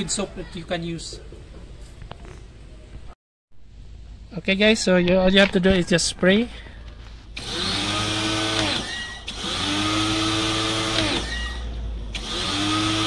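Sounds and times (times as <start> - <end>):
pressure washer motor: 7.4 - 13.0.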